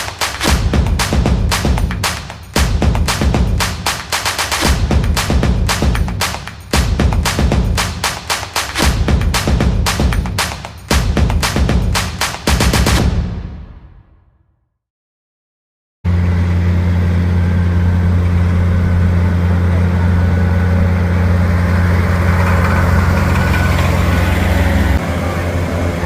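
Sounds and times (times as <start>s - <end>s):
music: 0.0s - 14.7s
engine droning: 16.1s - 26.0s.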